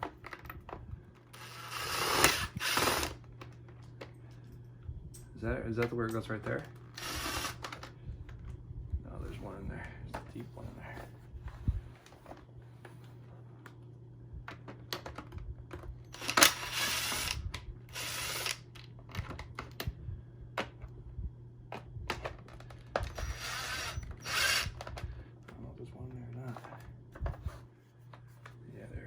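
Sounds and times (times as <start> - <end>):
low steady hum: 0.0 - 29.0
cordless screw gun: 1.4 - 3.2, 7.0 - 7.7, 16.2 - 18.6, 23.0 - 24.9.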